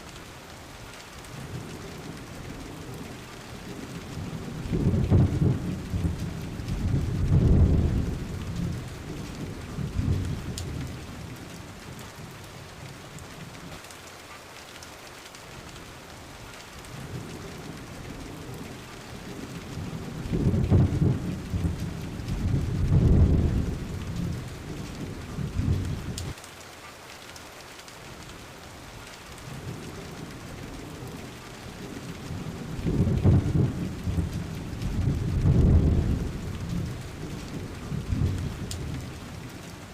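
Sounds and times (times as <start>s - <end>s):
steady rain: 0.0s - 39.9s
rolling thunder: 4.1s - 11.4s, 17.1s - 26.4s, 29.5s - 39.5s.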